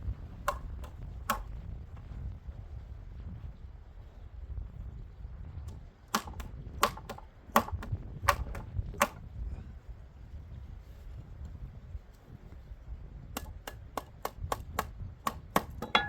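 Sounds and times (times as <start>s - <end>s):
low steady rumble: 0.0s - 16.0s
hand tool knocking on wood: 14.0s - 16.0s.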